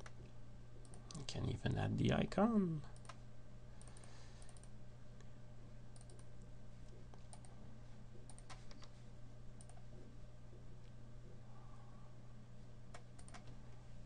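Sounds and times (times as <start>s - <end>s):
steady low hum: 0.0s - 14.0s
computer keys clicking: 0.8s - 1.2s, 2.9s - 3.2s, 3.8s - 4.8s, 5.9s - 6.4s, 7.1s - 7.5s, 8.2s - 8.9s, 9.6s - 9.8s, 12.9s - 13.6s.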